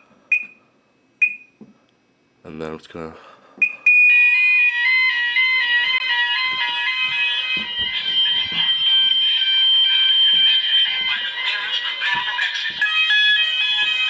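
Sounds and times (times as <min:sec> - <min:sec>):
steady high alarm tone: 0:03.6 - 0:14.0
two-tone fire alarm: 0:03.6 - 0:14.0.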